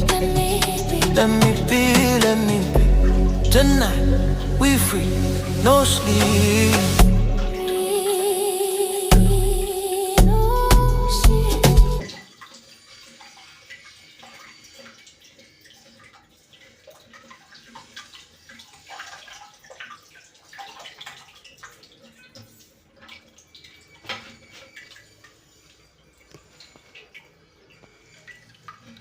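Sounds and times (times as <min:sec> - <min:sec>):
music: 0:00.0 - 0:08.0, 0:09.1 - 0:12.0
water running and trickling: 0:00.0 - 0:29.0.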